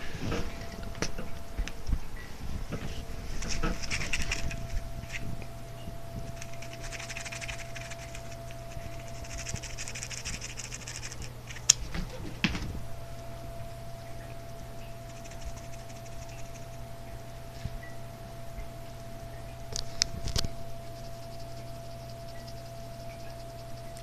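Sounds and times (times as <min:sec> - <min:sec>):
steady hum: 0:00.0 - 0:24.0
cat scrabbling with a toy: 0:02.7 - 0:05.5, 0:06.2 - 0:12.8.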